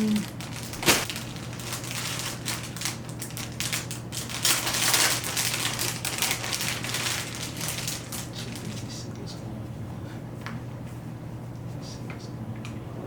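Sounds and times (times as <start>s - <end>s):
packaging crinkling and rustling: 0.0s - 8.9s.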